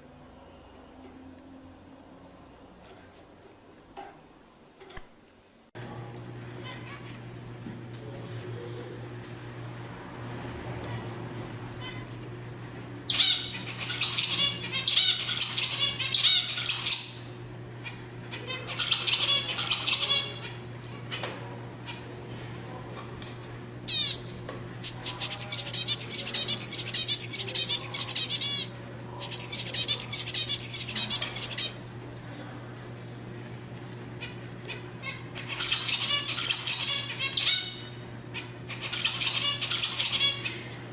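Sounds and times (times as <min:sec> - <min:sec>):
steady low hum: 0:00.0 - 0:40.9
finch singing buzzy notes: 0:13.1 - 0:20.6, 0:23.9 - 0:31.8, 0:34.2 - 0:40.8.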